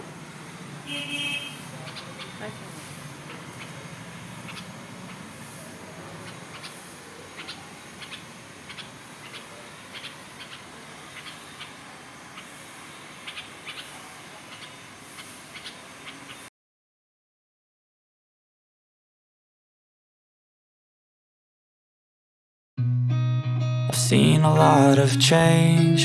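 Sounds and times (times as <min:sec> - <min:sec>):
background hiss: 0:00.0 - 0:16.5
bird chirping: 0:00.9 - 0:16.5.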